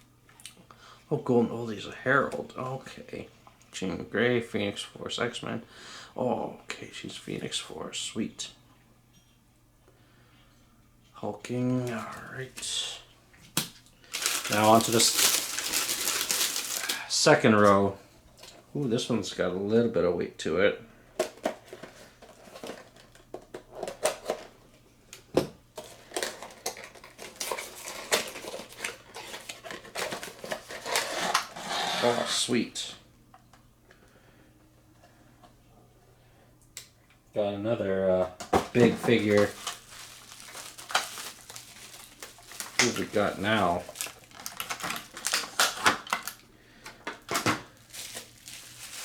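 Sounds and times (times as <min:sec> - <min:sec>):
packaging rustling and clicking: 0:13.5 - 0:17.7, 0:21.2 - 0:24.5, 0:25.8 - 0:31.7, 0:38.5 - 0:49.0
plastic packaging crinkling: 0:13.6 - 0:17.8, 0:25.8 - 0:32.2, 0:38.7 - 0:49.0.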